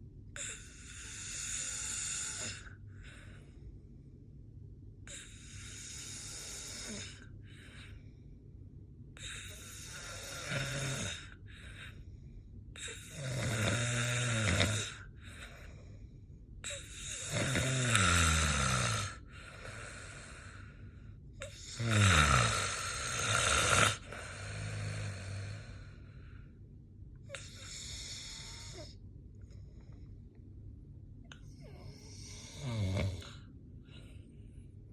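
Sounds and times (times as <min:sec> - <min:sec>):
person snoring: 0:00.4 - 0:02.8, 0:05.1 - 0:07.3, 0:09.2 - 0:12.0, 0:12.8 - 0:15.7, 0:16.7 - 0:20.8, 0:21.4 - 0:26.0, 0:31.6 - 0:33.5.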